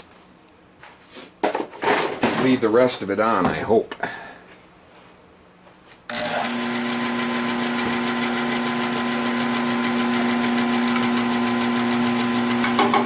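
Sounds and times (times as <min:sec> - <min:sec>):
wood lathe humming: 0:06.1 - 0:13.0.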